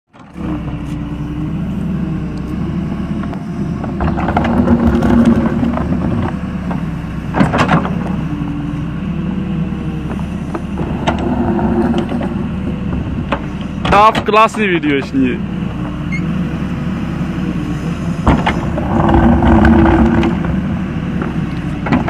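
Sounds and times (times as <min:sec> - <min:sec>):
diesel engine running: 0:00.1 - 0:22.0
knocks and clatter: 0:03.8 - 0:08.2, 0:10.1 - 0:15.1, 0:18.2 - 0:20.6, 0:21.2 - 0:22.0.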